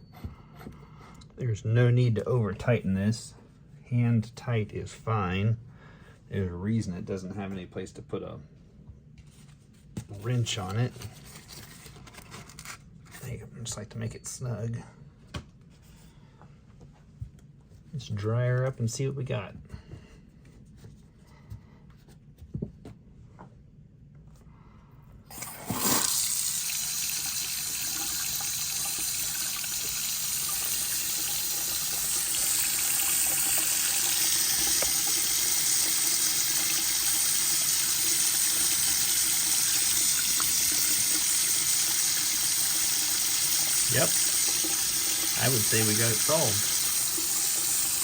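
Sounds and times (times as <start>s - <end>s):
water running into sink: 25.3s - 48.0s.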